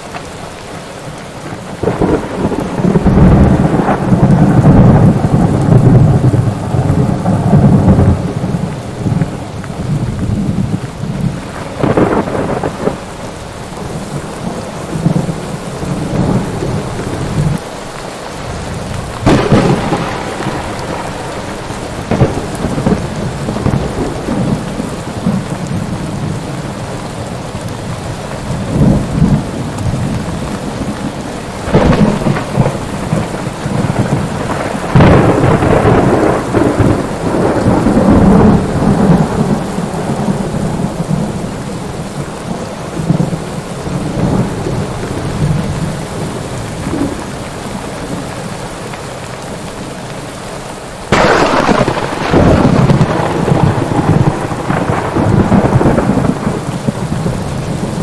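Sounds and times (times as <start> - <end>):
steady rain: 0.0 - 58.0
thunder claps and rumbles: 1.3 - 17.7, 18.3 - 48.6, 51.1 - 58.0.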